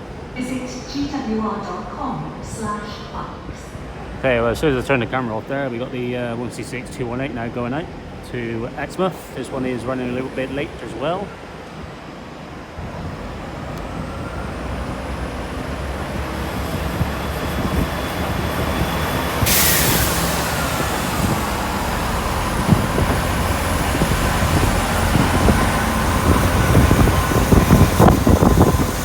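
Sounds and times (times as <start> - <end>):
diesel train engine rumble: 0.0 - 29.0
sharp hiss of air: 19.4 - 21.6.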